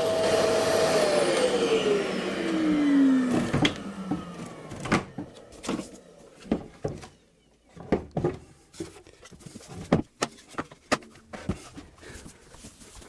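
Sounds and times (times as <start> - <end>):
knocks and clatter on wooden cabinet: 7.8 - 11.7.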